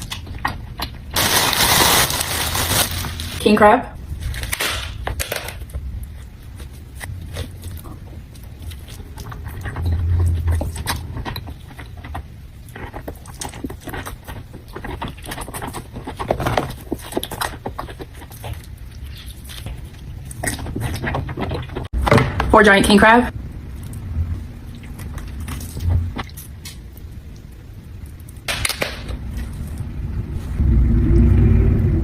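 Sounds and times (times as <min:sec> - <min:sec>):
chewing and cracking crab: 0:05.6 - 0:21.9, 0:23.5 - 0:29.8.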